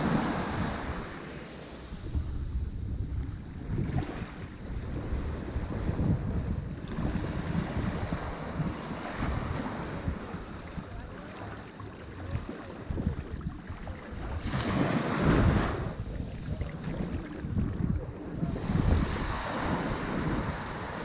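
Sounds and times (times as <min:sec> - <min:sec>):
wave crashing: 0:00.0 - 0:04.6, 0:14.1 - 0:21.0
ocean waves washing ashore: 0:00.0 - 0:21.0
wind buffeting microphone: 0:00.0 - 0:21.0.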